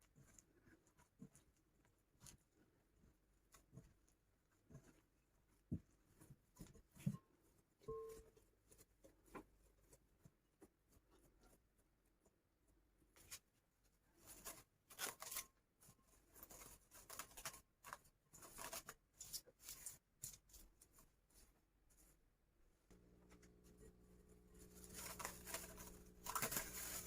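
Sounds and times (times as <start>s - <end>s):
kitchen scraping and rustling: 23.2s - 27.0s.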